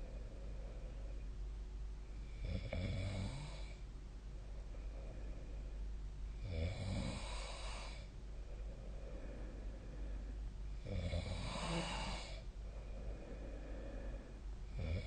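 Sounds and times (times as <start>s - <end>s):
faint breathing: 0.0s - 2.5s, 3.1s - 15.0s
person snoring: 2.3s - 3.8s, 6.4s - 8.1s, 10.8s - 12.4s, 13.0s - 15.0s.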